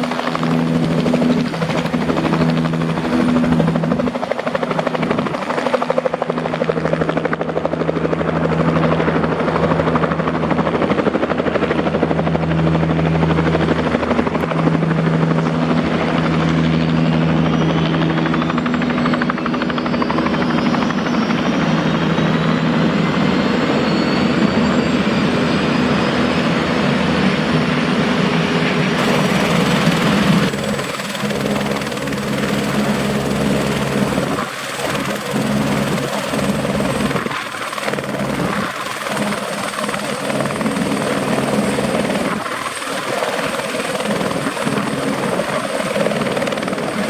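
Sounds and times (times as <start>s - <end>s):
helicopter engine and rotor: 0.0s - 47.0s
high turbine whine rising: 17.2s - 47.0s.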